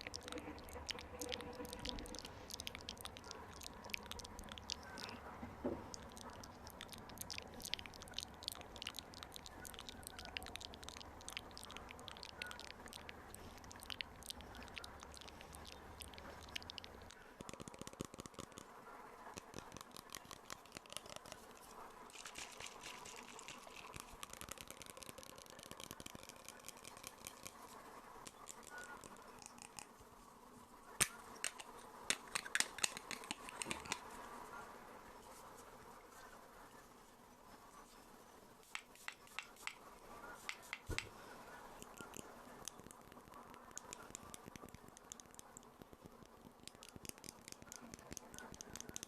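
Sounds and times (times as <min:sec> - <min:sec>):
soft crackling: 0:00.0 - 0:49.0
fine clicking: 0:41.8 - 0:49.0.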